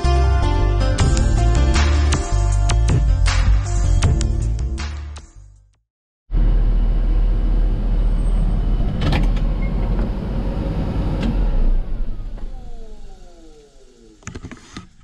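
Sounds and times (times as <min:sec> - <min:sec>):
music: 0:00.0 - 0:05.8.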